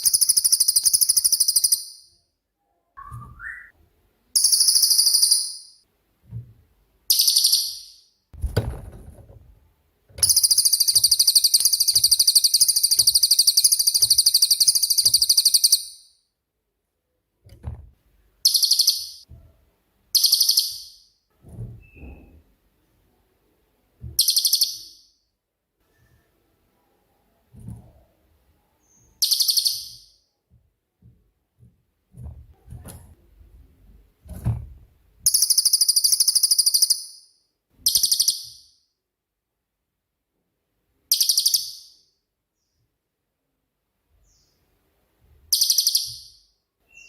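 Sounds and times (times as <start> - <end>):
bird high-pitched trilling: 3.0 - 3.7, 7.1 - 8.0, 10.2 - 16.0, 18.4 - 19.2, 20.2 - 21.0, 29.2 - 30.1, 45.5 - 47.0
low thump: 8.4 - 9.5.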